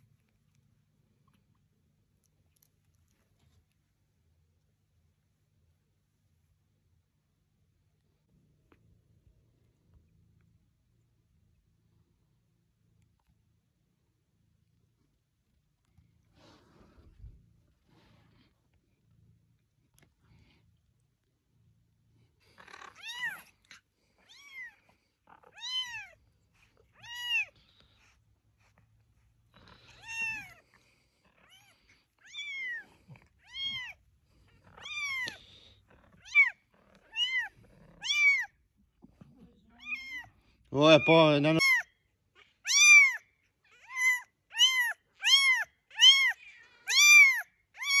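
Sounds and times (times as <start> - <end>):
kitten meowing: 24.3 - 24.8, 25.4 - 26.1, 27.0 - 27.5, 29.7 - 30.6, 31.5 - 34.0, 34.8 - 35.5, 36.2 - 38.5, 39.7 - 40.3, 40.9 - 41.8, 42.6 - 43.2, 43.8 - 48.0.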